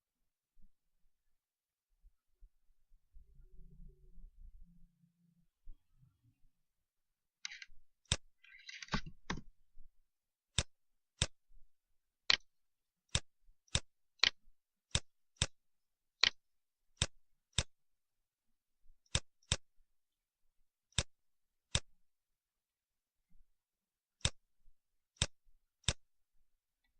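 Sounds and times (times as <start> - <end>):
computer mouse clicking: 7.4 - 9.5, 10.5 - 11.4, 12.3 - 12.5, 13.1 - 15.6, 16.2 - 16.4, 17.0 - 17.7, 19.0 - 19.6, 21.7 - 21.9, 24.2 - 24.4, 25.2 - 26.0.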